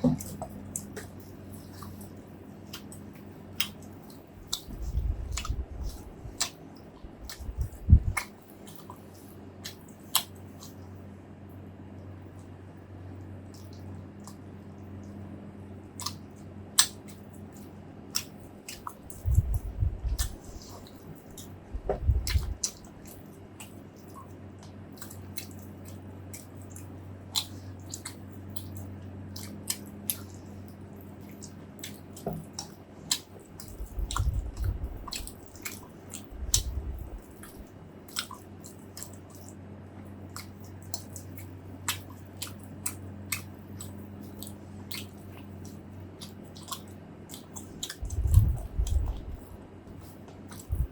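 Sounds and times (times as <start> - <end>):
person chewing food: 0.0 - 11.1, 11.9 - 50.9
faint steady hum: 0.0 - 50.9
brief low thuds: 21.8 - 22.4.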